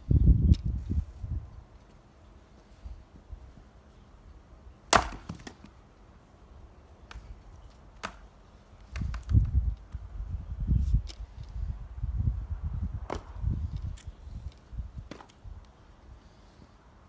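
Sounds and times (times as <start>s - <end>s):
axe splitting log: 4.9s - 5.7s
knocks of wood: 4.9s - 5.7s, 8.0s - 8.2s.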